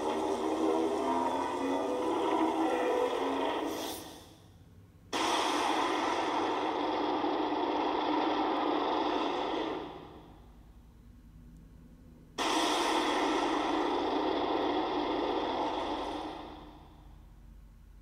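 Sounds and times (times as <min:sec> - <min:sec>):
rushing hiss-like roar blasts: 0:05.1 - 0:09.9, 0:12.4 - 0:16.8.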